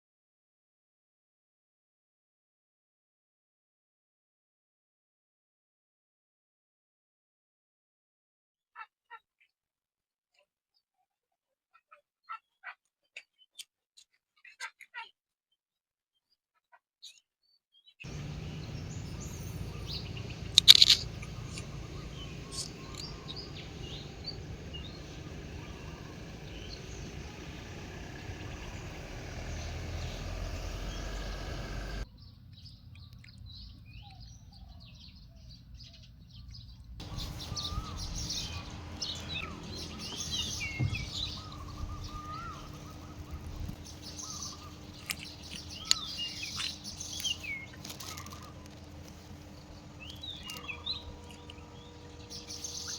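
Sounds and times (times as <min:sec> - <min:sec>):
small birds chirping: 0:17.8 - 0:52.9.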